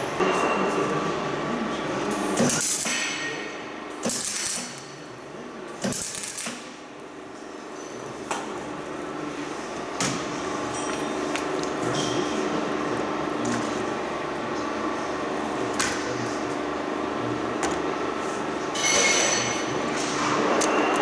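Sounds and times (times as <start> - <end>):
crackling welding hiss: 2.2 - 5.0, 5.8 - 6.8.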